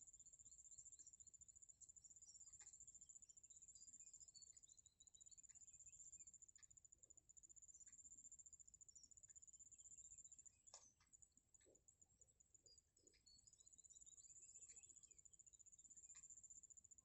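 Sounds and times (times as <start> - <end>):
ticks: 2.2 - 3.0, 5.2 - 6.9, 9.0 - 17.0
high-pitched insect trilling: 11.4 - 17.0.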